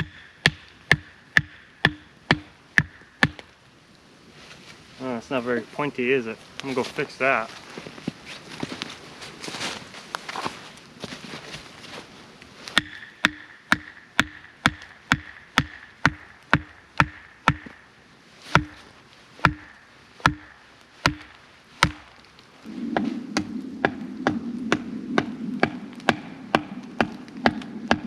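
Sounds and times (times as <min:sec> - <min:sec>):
blade chopping wood: 0:12.7 - 0:17.8, 0:18.5 - 0:18.8, 0:19.4 - 0:22.2.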